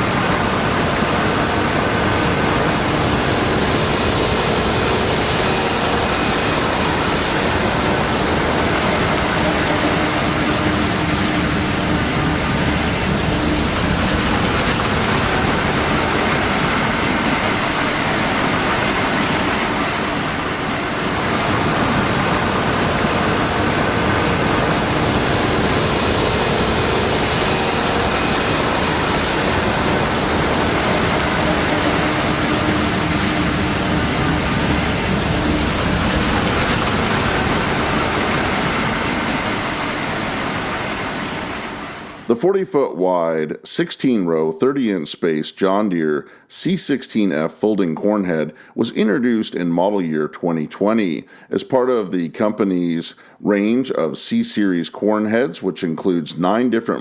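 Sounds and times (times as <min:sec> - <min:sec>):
combine harvester engine and threshing: 0:00.0 - 0:42.3.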